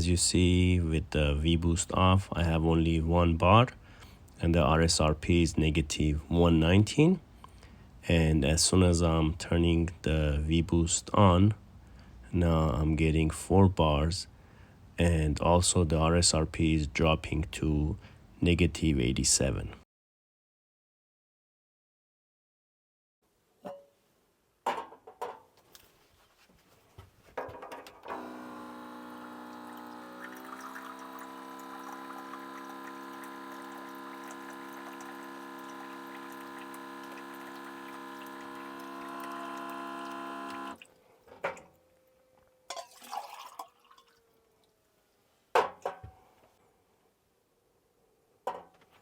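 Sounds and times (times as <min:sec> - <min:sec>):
small motor humming: 0:28.1 - 0:40.8.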